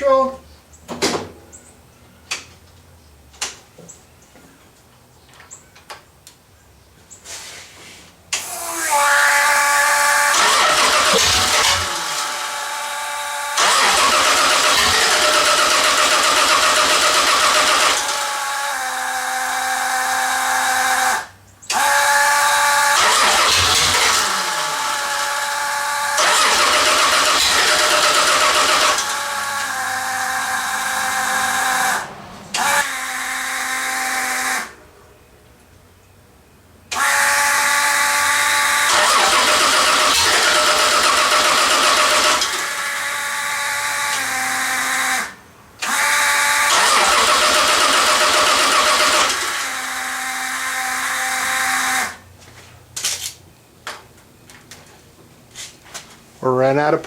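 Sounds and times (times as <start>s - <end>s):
car engine cranking and running: 8.3s - 34.8s, 36.9s - 53.3s.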